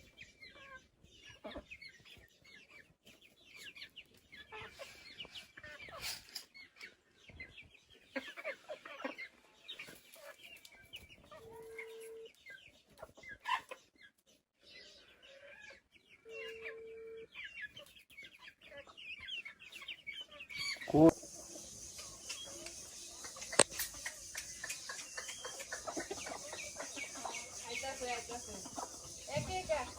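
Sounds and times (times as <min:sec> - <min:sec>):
chicks peeping and chirping: 0:00.0 - 0:29.9.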